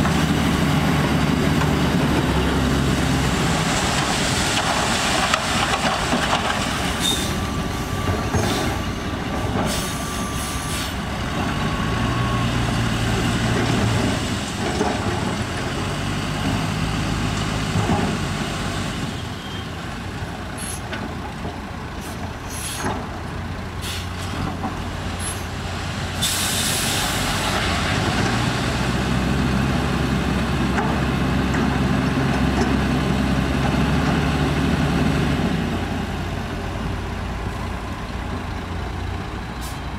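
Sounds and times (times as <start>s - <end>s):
air brake hiss: 23.8s - 24.2s, 26.2s - 27.2s.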